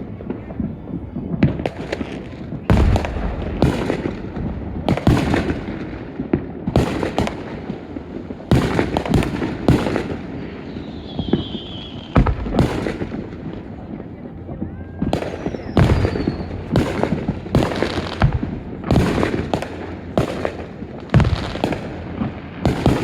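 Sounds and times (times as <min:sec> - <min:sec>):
fireworks bangs: 0:00.0 - 0:23.0
fireworks crackling: 0:00.0 - 0:23.0
high firework whistle: 0:10.4 - 0:12.9, 0:14.8 - 0:16.9.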